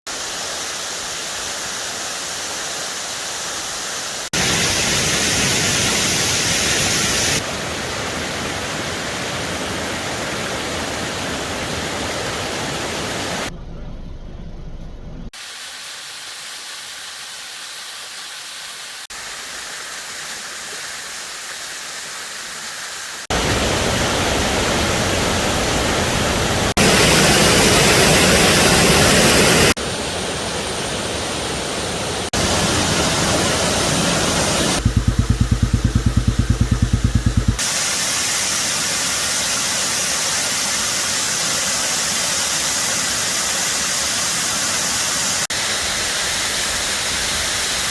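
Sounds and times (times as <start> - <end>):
waterfall rushing: 0.1 - 13.5, 18.8 - 47.9
deep pulsing rumble: 34.8 - 37.6.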